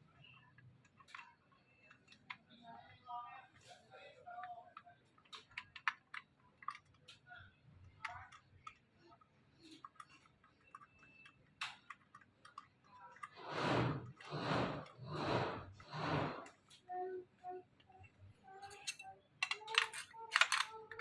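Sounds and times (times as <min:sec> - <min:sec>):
small metal parts clicking: 0:18.6 - 0:21.0.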